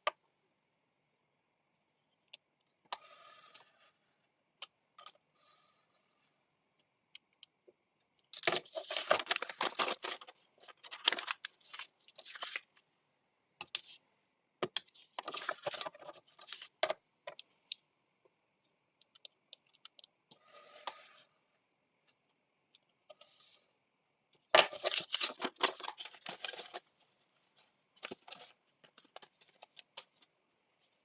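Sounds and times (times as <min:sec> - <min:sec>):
paper rustling: 0:08.4 - 0:12.6, 0:24.6 - 0:26.8.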